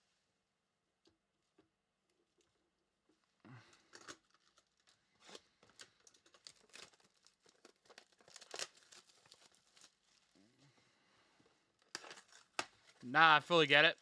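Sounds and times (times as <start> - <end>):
wrappers tearing and crinkling: 3.9 - 10.5, 11.8 - 13.0.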